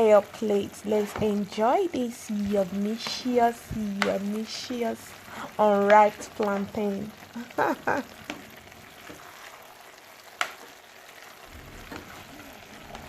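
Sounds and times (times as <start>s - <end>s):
steady hiss: 7.3s - 13.0s.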